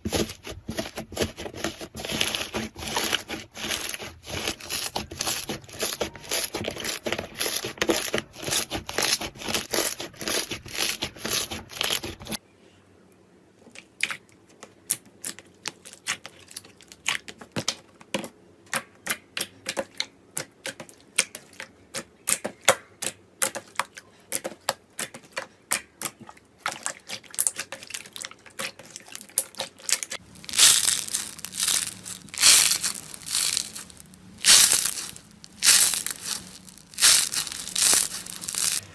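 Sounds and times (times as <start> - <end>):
slime crackling and popping: 30.1 - 38.9.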